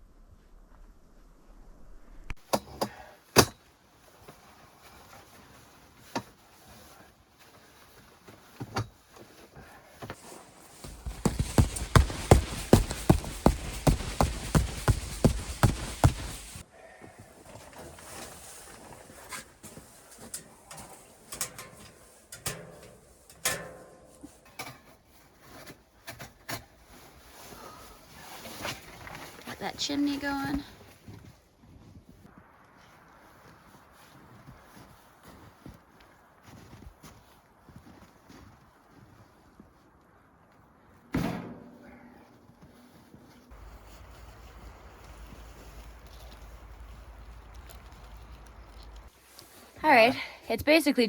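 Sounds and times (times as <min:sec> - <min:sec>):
sharp knocks and clatters: 0:10.8 - 0:16.6.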